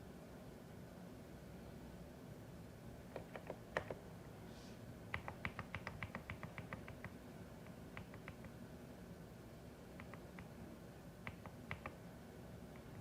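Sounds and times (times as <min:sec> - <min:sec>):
mechanical keyboard typing: 0:05.1 - 0:07.2, 0:07.9 - 0:08.5, 0:11.2 - 0:12.0.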